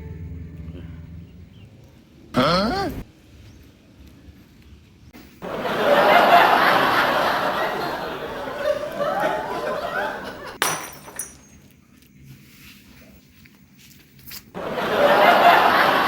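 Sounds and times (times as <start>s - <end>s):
people laughing: 5.4s - 10.6s, 14.6s - 16.0s.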